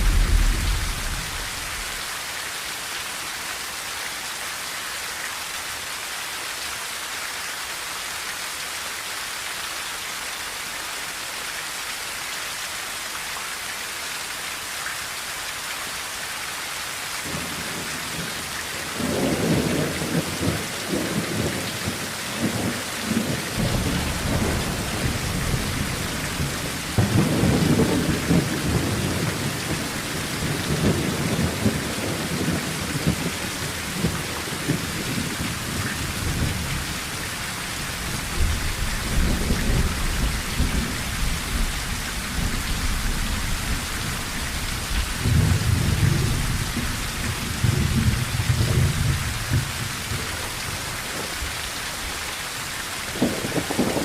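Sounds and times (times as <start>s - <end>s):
thunder rumbling: 0.0s - 2.0s, 19.0s - 37.0s, 53.1s - 54.0s
heavy rain on a tin roof: 0.0s - 54.0s.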